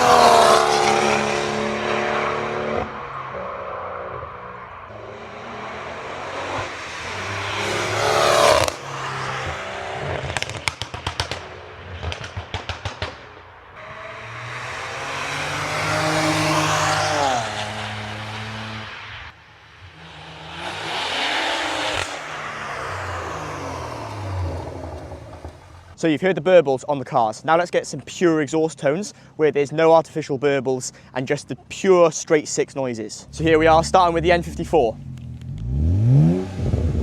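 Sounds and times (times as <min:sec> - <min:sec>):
cars passing fast: 0:00.0 - 0:26.0, 0:33.2 - 0:37.0
exhaust pops and crackles: 0:10.0 - 0:13.5, 0:24.4 - 0:26.0, 0:33.3 - 0:35.8.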